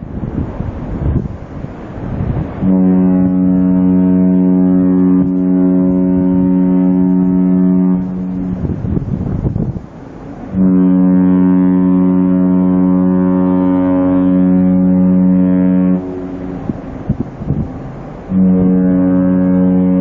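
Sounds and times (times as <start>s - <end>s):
ship's horn blasts: 0.0s - 20.0s.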